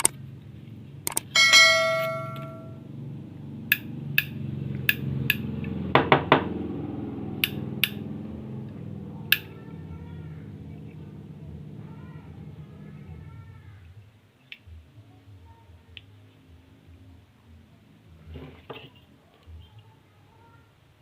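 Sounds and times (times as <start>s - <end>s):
metallic clicks and knocks: 1.1s - 2.6s.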